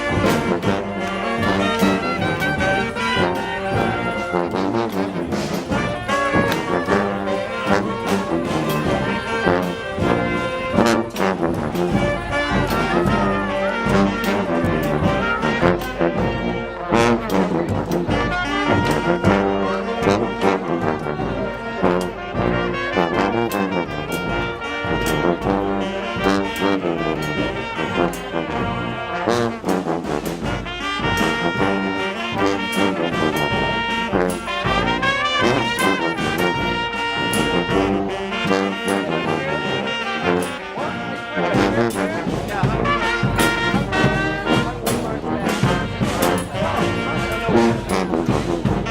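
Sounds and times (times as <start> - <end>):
sharp percussion hits: 0.0 - 16.4, 41.8 - 48.9
brass band playing: 0.0 - 48.9.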